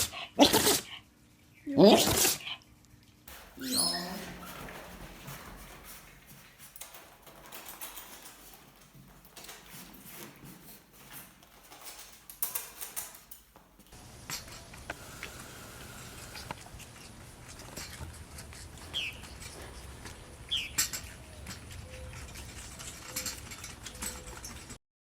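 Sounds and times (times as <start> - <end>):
small pet sneezing: 0.0 - 1.0, 1.8 - 2.6
high falling squeaks: 3.3 - 6.7.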